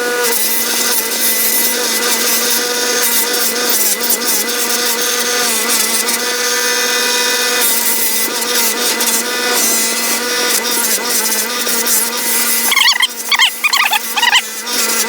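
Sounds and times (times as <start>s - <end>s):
metal rubbing on polishing mop: 12.7s - 14.4s.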